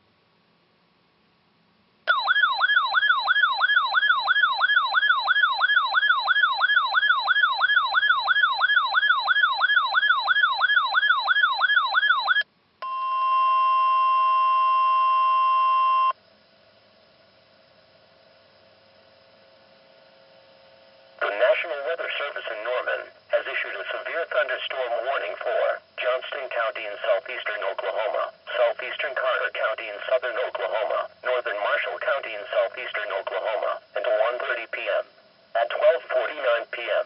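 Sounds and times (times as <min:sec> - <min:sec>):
faint hum: 0:00.0 - 0:37.0
warbling electronic siren tone: 0:02.1 - 0:12.4.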